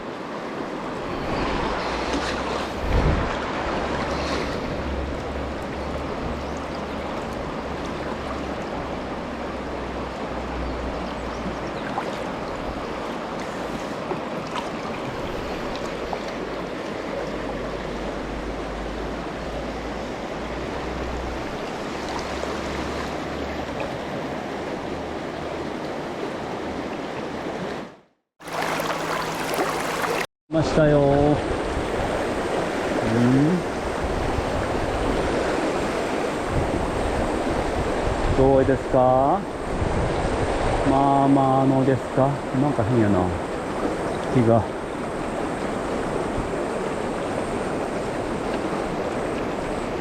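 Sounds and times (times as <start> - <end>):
river current rushing: 0.0 - 50.0
wind buffeting microphone: 2.7 - 6.5, 31.0 - 40.9.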